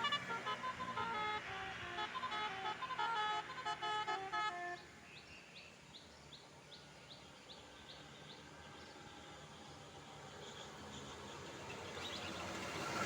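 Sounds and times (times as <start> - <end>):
musical bus horn melody: 0.0 - 5.0.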